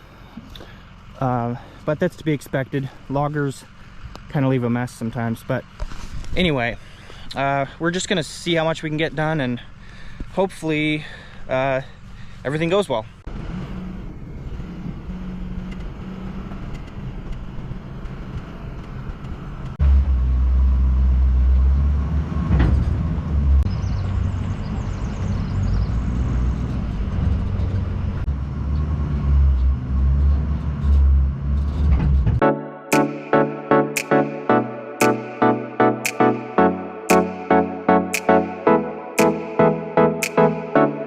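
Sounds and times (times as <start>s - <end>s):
engine running: 0.0s - 10.3s.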